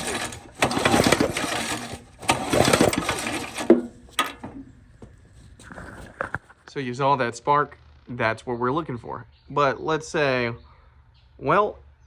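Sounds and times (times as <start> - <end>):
engine pull-starter cranking: 0.0 - 4.7.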